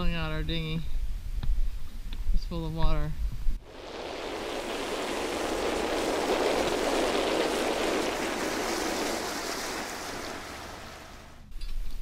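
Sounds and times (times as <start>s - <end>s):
water splashing and pouring: 3.6s - 11.5s.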